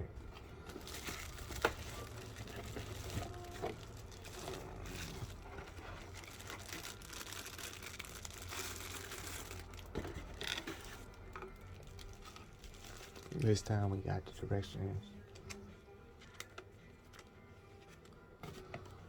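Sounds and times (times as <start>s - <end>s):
packaging crinkling and rustling: 0.3s - 13.9s.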